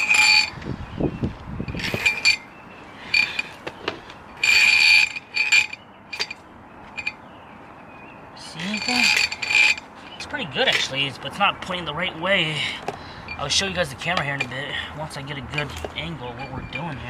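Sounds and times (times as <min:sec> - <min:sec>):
metal cable scraping in pipe: 0:00.0 - 0:00.6, 0:01.7 - 0:02.5, 0:04.4 - 0:06.4, 0:08.7 - 0:10.9.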